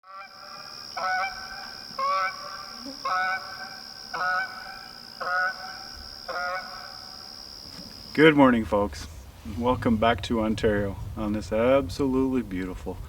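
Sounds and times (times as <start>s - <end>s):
goose honking: 0.0s - 7.2s.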